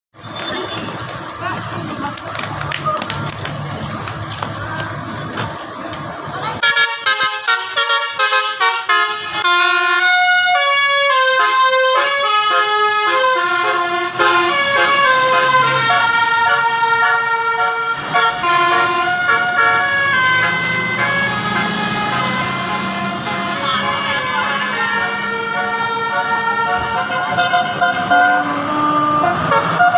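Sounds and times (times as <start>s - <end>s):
bus air horns playing tune: 6.6s - 29.9s.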